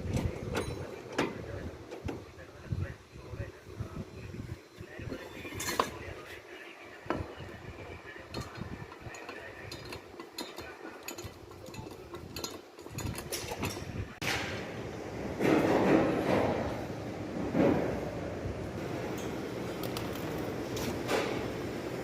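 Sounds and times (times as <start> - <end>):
metal tools clinking: 0.2 - 1.3, 5.3 - 6.0, 8.3 - 14.2.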